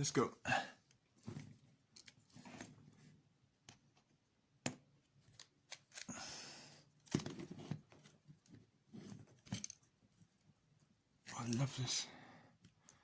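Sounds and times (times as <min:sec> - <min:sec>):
small parts clicking and knocking: 0:01.9 - 0:02.3, 0:07.0 - 0:09.9.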